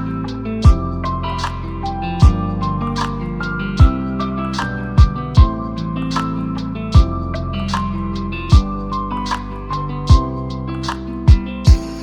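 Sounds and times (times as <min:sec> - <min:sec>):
melodic music over beat: 0:00.0 - 0:12.0
deep kick drum thump: 0:00.6 - 0:00.9, 0:02.2 - 0:02.4, 0:03.8 - 0:04.0, 0:05.0 - 0:05.6, 0:07.0 - 0:07.2, 0:08.5 - 0:08.7, 0:10.1 - 0:10.3, 0:11.3 - 0:11.8.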